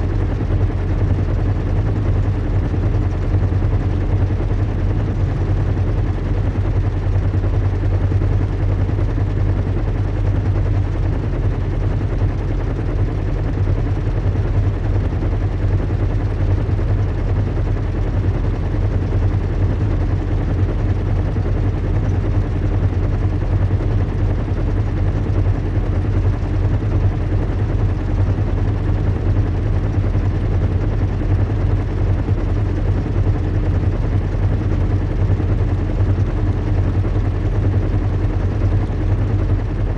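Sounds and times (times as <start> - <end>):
deep engine rumble: 0.0 - 39.9.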